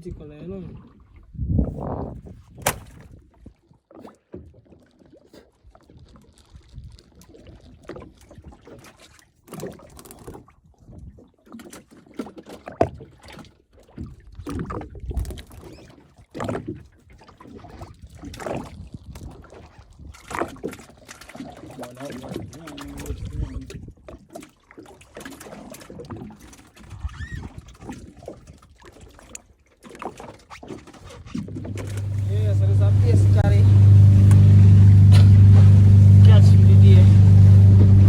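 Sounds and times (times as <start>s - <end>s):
water slapping against boat hull: 0.7s - 5.2s, 7.8s - 38.0s
sharp knocks on board: 2.6s - 3.0s.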